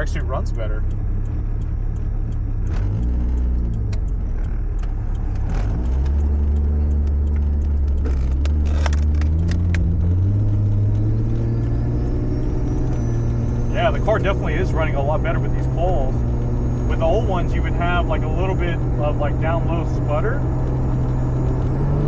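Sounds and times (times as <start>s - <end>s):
sharp clicks: 0.0s - 13.7s
car engine drone from cabin: 0.0s - 22.0s.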